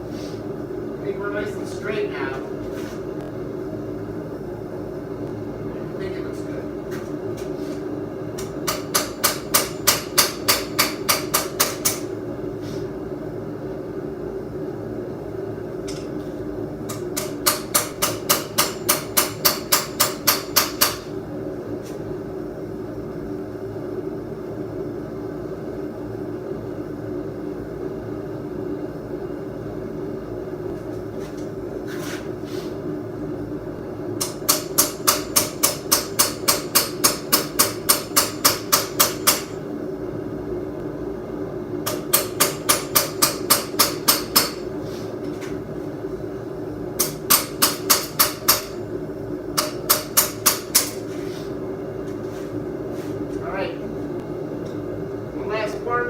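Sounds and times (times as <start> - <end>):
hammer striking steel on anvil: 8.4 - 12.1, 16.9 - 21.1, 34.2 - 39.6, 41.9 - 44.6, 47.0 - 48.8, 49.6 - 51.0.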